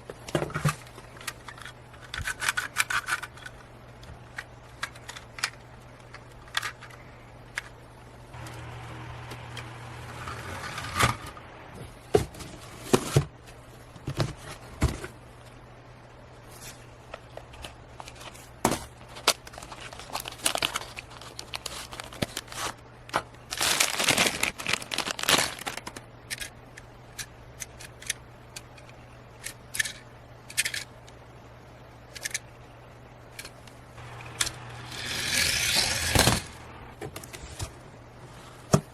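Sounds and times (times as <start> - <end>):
toy cars scraping: 10.0 - 11.4, 34.0 - 36.7
toy cars clicking and clacking: 28.8 - 30.9, 34.2 - 36.6.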